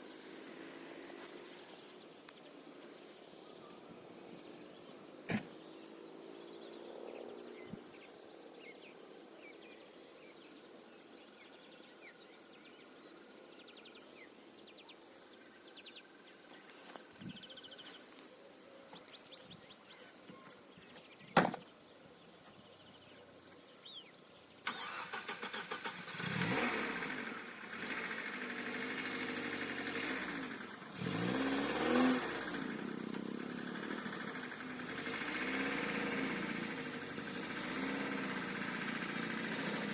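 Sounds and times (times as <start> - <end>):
tractor engine starting and running: 0.0 - 2.0, 24.6 - 39.9.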